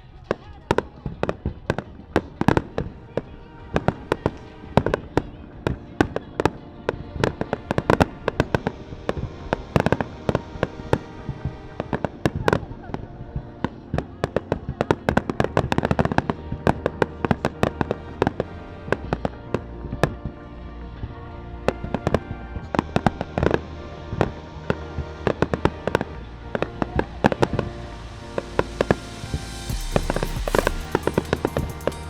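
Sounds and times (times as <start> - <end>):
music playing: 0.0 - 32.0
fireworks bursting and crackling: 22.8 - 32.0.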